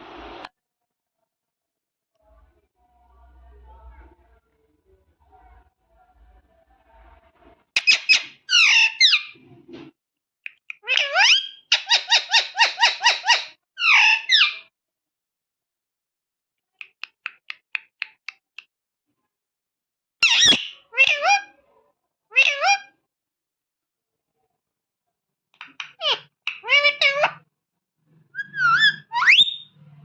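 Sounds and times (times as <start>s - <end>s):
parrot calling: 7.8s - 9.4s, 10.7s - 14.7s, 20.2s - 21.6s, 22.3s - 23.0s, 25.7s - 27.4s, 28.3s - 29.7s.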